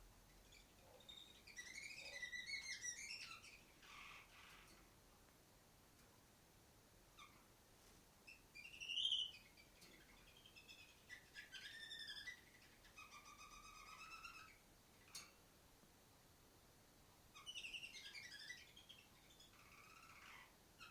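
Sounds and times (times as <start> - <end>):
distant canary chirping: 0.0 - 5.0, 7.1 - 7.6, 8.2 - 15.6, 17.3 - 20.9.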